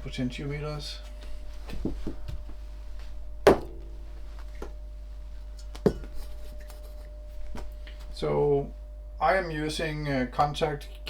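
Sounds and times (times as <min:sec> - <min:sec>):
objects knocking on workbench: 0:03.5 - 0:04.8, 0:05.8 - 0:06.2.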